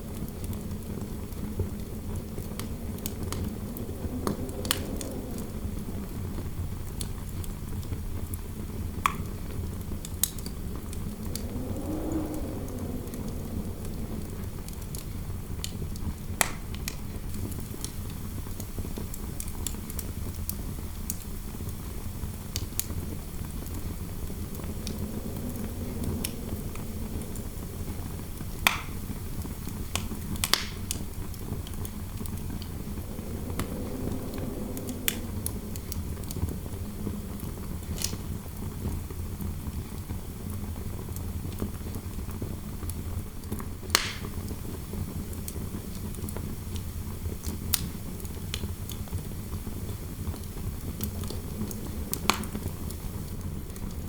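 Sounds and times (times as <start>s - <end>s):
low rumble: 0.0s - 7.6s, 9.3s - 16.5s, 21.4s - 38.4s, 49.8s - 53.6s
wind howling: 0.0s - 39.3s, 49.2s - 54.0s
wood fire crackling: 0.0s - 39.3s, 40.0s - 54.0s.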